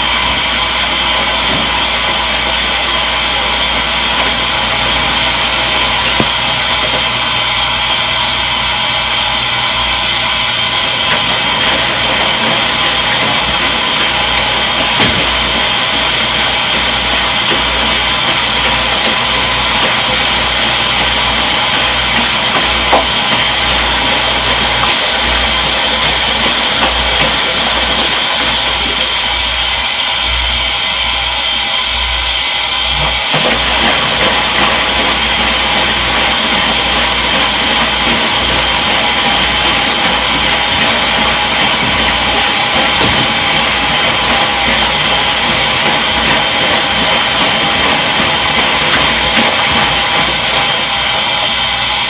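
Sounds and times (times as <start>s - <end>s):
washing machine running: 0.0s - 52.0s.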